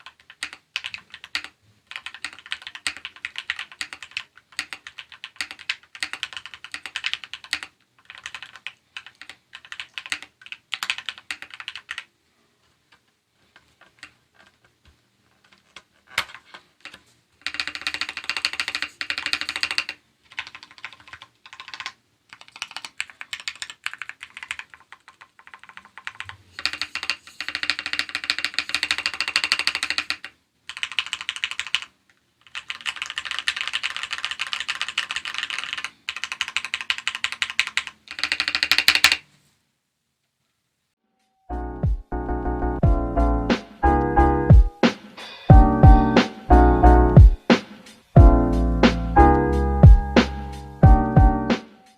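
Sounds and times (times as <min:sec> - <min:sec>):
mechanical keyboard typing: 0:00.0 - 0:12.1, 0:12.9 - 0:14.7, 0:15.4 - 0:39.2.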